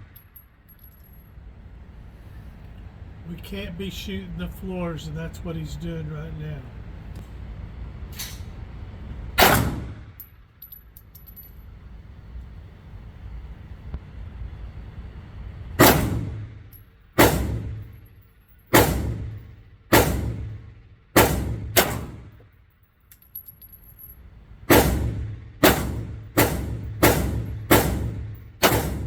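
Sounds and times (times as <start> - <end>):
pistol shots in indoor range: 9.4 - 11.8, 15.8 - 29.0.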